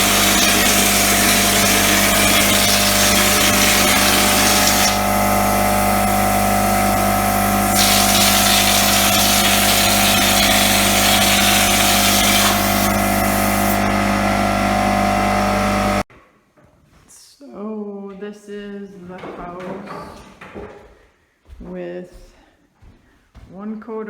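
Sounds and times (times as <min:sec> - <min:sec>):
hiss: 0:00.0 - 0:13.8
power tool motor humming: 0:00.0 - 0:16.1.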